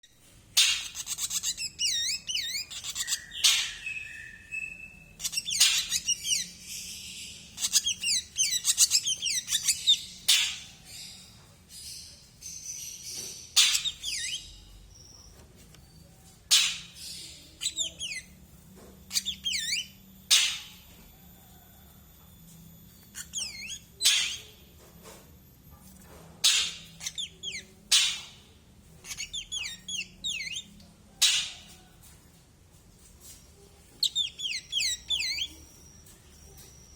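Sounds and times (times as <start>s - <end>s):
bird whistling song: 0.6s - 11.2s, 13.6s - 15.3s, 19.1s - 20.7s, 29.0s - 31.6s, 34.0s - 36.2s.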